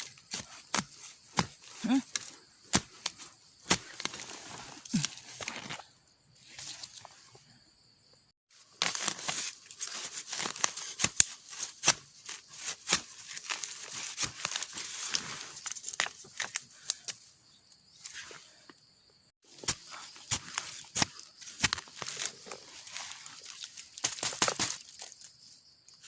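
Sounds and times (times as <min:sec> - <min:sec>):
twigs snapping: 0:00.0 - 0:05.8, 0:08.8 - 0:17.3, 0:19.5 - 0:26.0
dry leaves rustling: 0:08.6 - 0:16.5, 0:19.5 - 0:25.4.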